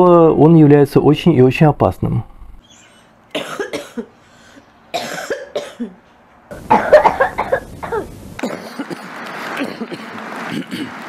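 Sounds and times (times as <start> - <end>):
person coughing: 3.3 - 4.1, 4.9 - 6.0, 6.7 - 11.0.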